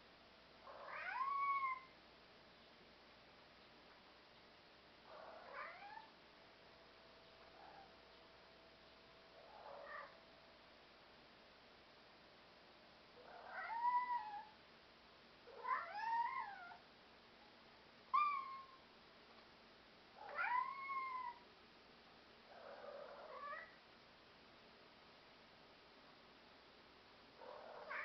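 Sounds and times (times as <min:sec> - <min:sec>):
cat meowing: 0:00.7 - 0:01.9, 0:05.2 - 0:06.1, 0:09.6 - 0:10.2, 0:13.3 - 0:14.5, 0:15.6 - 0:16.8, 0:20.2 - 0:21.4, 0:22.8 - 0:23.8, 0:27.5 - 0:28.0.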